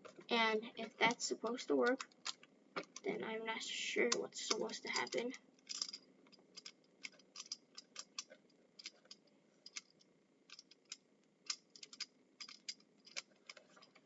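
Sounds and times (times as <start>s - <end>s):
plastic pieces clicking: 1.8s - 3.1s, 4.4s - 14.0s.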